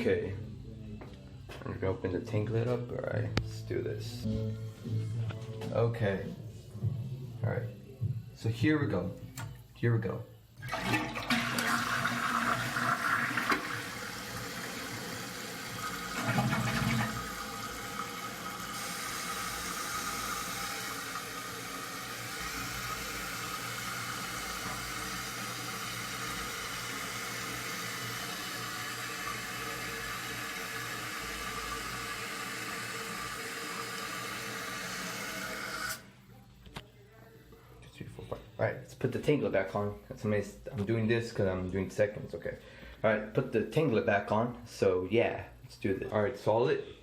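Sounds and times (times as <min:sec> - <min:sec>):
toilet flushing: 0:10.6 - 0:36.1
toilet tank refilling hiss: 0:10.6 - 0:36.1.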